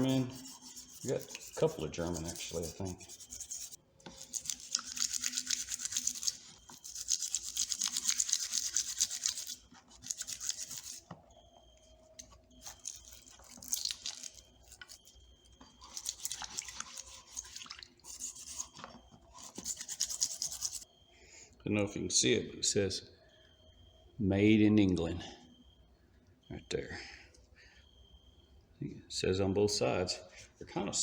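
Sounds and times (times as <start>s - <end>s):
stiff brush scrubbing metal: 0.0s - 11.1s, 15.8s - 20.8s.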